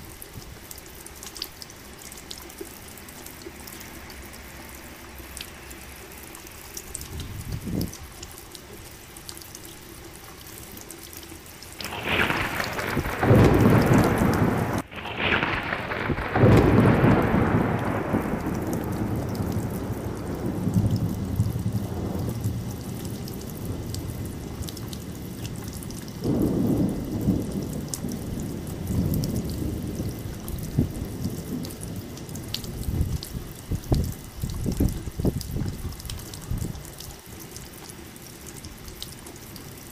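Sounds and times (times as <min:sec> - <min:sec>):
steady rain: 0:00.0 - 0:39.9
thunder rumbling: 0:11.8 - 0:37.0.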